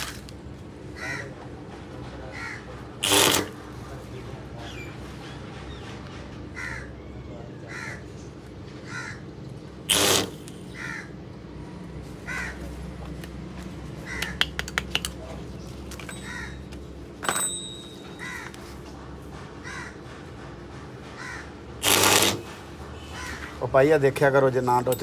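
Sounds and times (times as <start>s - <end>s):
crows cawing: 0.9s - 1.4s, 2.2s - 2.8s, 6.5s - 9.4s, 10.7s - 11.2s, 12.2s - 12.8s, 14.0s - 14.5s, 16.2s - 16.7s, 19.6s - 20.2s, 21.1s - 21.7s, 23.0s - 23.6s
loud short noise: 3.0s - 3.6s, 9.9s - 10.6s, 21.8s - 23.4s
sharp clicks: 14.2s - 15.2s.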